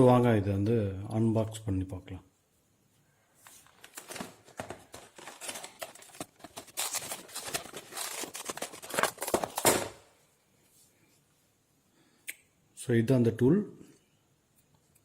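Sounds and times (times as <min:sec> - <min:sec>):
box and plastic rustling: 0:03.4 - 0:10.2
packaging tearing: 0:03.8 - 0:10.0.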